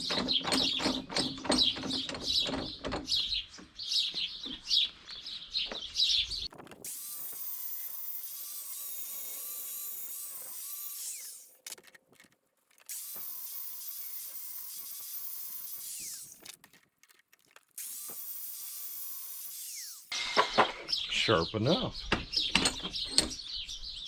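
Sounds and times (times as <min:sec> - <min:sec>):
birds chirping: 0:00.0 - 0:06.7, 0:20.2 - 0:24.0
electric grinder on metal: 0:06.8 - 0:11.8, 0:12.9 - 0:16.6, 0:17.8 - 0:20.6.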